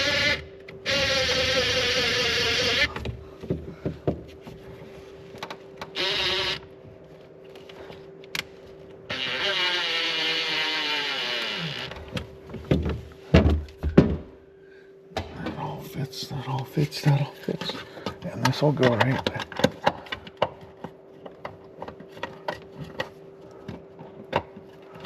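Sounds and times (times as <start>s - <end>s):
cordless drill running: 0.0s - 3.0s, 5.9s - 6.7s, 9.1s - 12.0s
handling knocks and clatter: 17.1s - 25.0s.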